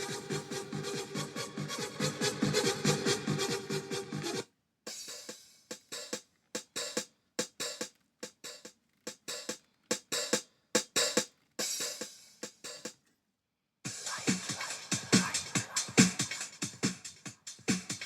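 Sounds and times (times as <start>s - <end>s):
electronic music on car radio: 0.0s - 4.4s, 13.9s - 18.0s.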